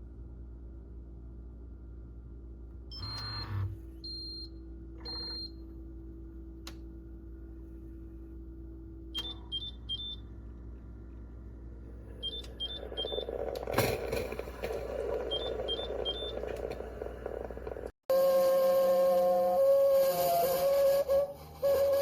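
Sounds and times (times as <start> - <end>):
low running hum: 0.0 - 18.0
steady whistle-like tone: 18.1 - 22.0.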